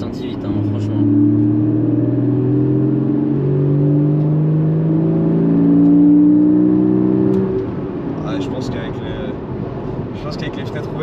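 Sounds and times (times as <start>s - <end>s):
car engine accelerating: 0.0s - 8.7s.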